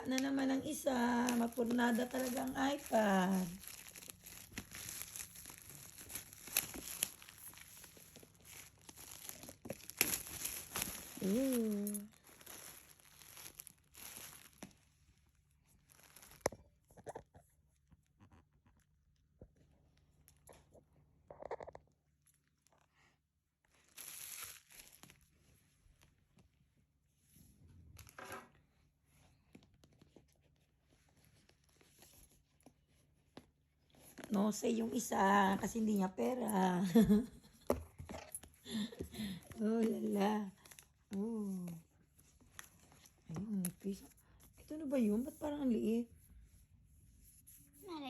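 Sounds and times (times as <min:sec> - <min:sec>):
packaging rustling and crinkling: 0:00.0 - 0:17.4, 0:23.7 - 0:26.4, 0:34.0 - 0:45.8.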